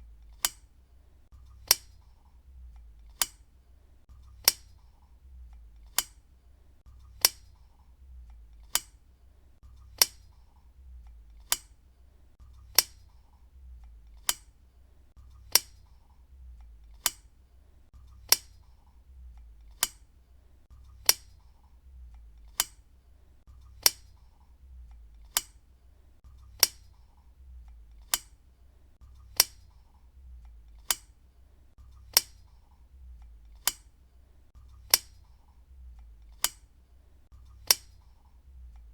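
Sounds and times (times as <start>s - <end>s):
desk lamp switch clicking: 0.1s - 0.8s, 1.5s - 3.5s, 4.2s - 6.3s, 7.0s - 9.1s, 9.8s - 11.8s, 12.6s - 14.6s, 15.3s - 17.3s, 18.0s - 20.1s, 20.9s - 22.9s, 23.6s - 25.7s, 26.4s - 28.4s, 29.2s - 31.2s, 32.0s - 34.0s, 34.7s - 36.8s, 37.5s - 38.9s.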